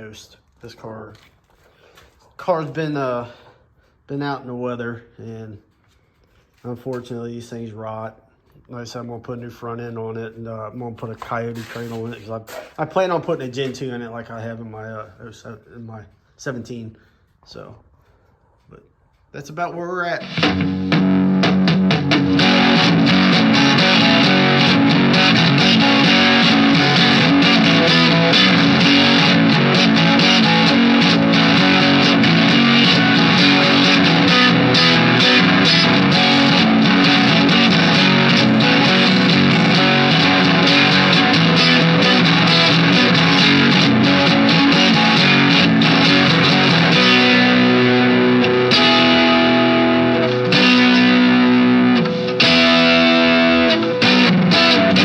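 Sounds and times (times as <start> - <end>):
rock music with distorted guitar: 20.2 - 55.0.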